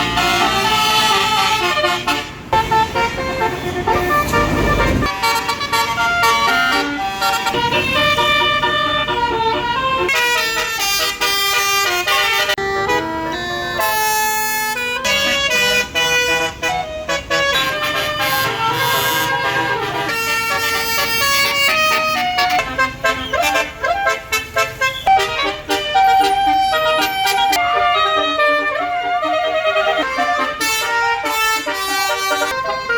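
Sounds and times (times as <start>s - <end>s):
musical air horn playing tunes: 0.0s - 32.9s
rush of noise: 3.8s - 5.1s.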